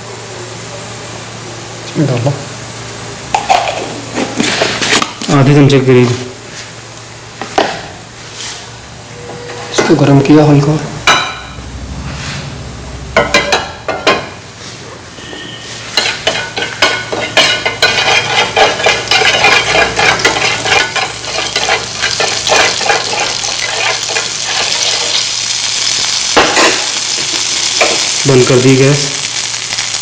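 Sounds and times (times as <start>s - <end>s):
oil crackling and sizzling: 15.2s - 30.0s.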